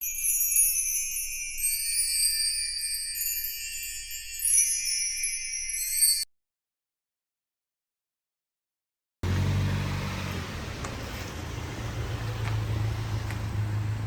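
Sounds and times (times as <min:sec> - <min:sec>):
chimes and jingle bells: 0:00.0 - 0:06.3.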